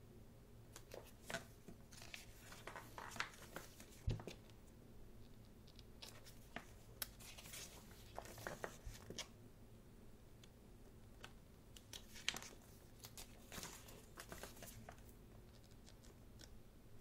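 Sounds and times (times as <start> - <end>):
book pages rustling: 0.8 - 4.5, 6.0 - 9.3, 11.8 - 16.5.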